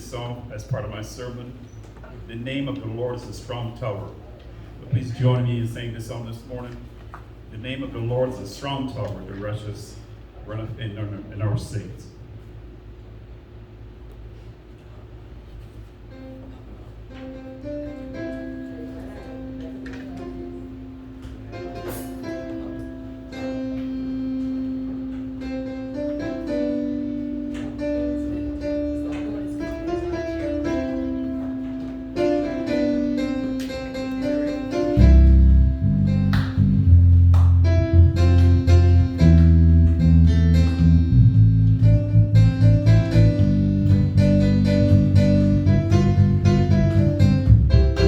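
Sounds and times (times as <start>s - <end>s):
keyboard and guitar chords: 17.1s - 48.0s
bass line: 34.3s - 48.0s.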